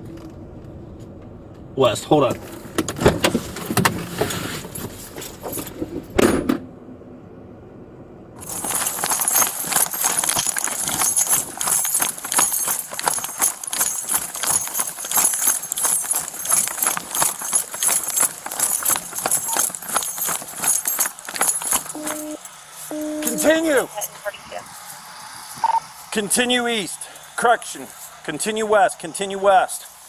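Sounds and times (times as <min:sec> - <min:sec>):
gear rattling and jangling: 0:03.2 - 0:06.2, 0:08.4 - 0:25.0, 0:25.9 - 0:28.5
running footfalls: 0:08.4 - 0:22.5.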